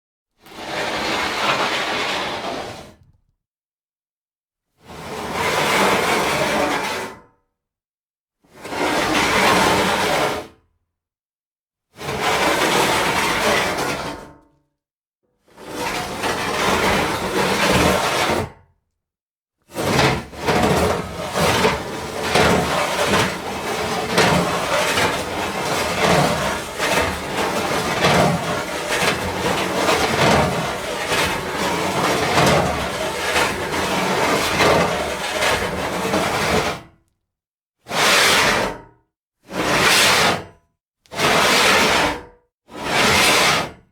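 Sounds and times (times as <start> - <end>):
metal sheets sliding and scraping: 0.6 - 2.9, 19.8 - 36.7.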